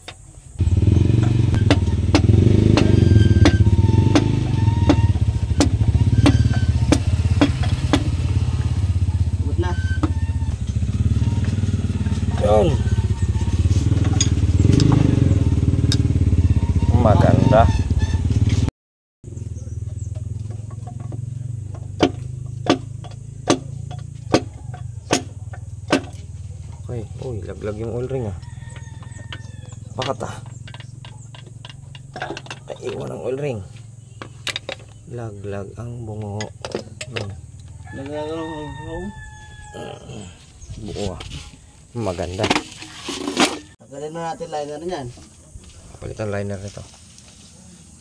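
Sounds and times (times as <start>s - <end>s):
engine running: 0.0s - 43.8s
low motor hum: 0.6s - 18.7s, 19.3s - 43.8s
sharp clicks or knocks: 20.0s - 26.2s.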